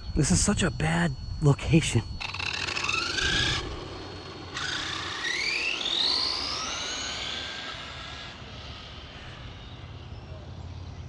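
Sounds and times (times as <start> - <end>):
electric motor whine rising: 2.1 - 10.3.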